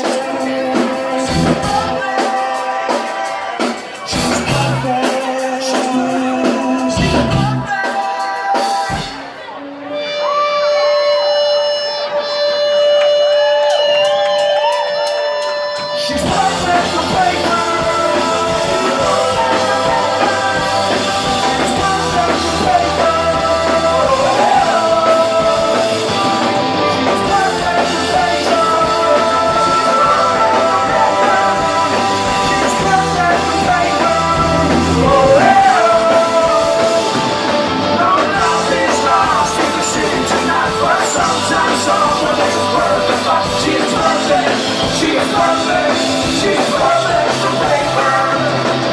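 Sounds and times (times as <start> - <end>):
rock band playing live: 0.0 - 48.9.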